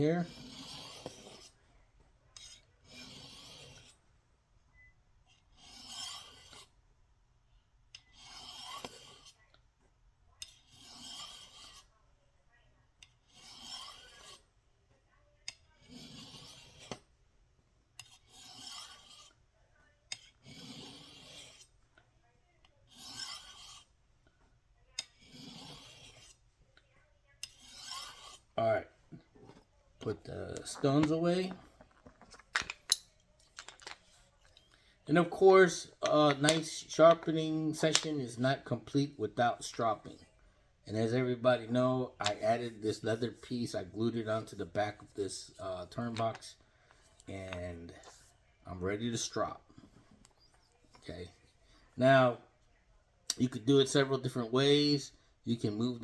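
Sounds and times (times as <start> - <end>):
knife rasping on ceramic rod: 0.0 - 1.6, 2.3 - 4.0, 5.3 - 6.8, 8.0 - 9.5, 10.4 - 11.9, 13.0 - 14.5, 15.4 - 17.1, 18.0 - 19.4, 20.1 - 21.8, 22.8 - 24.0, 24.9 - 26.5, 27.4 - 31.9, 35.1 - 40.3.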